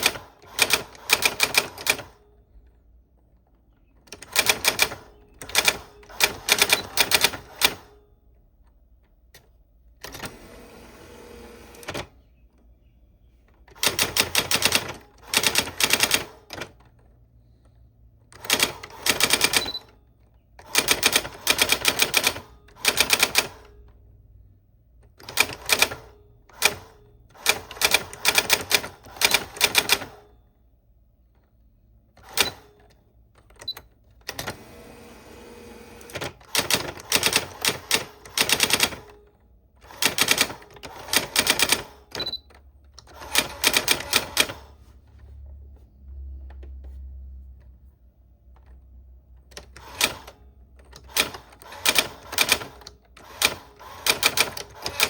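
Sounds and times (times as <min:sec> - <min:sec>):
typewriter key strikes: 0:49.5 - 0:55.0.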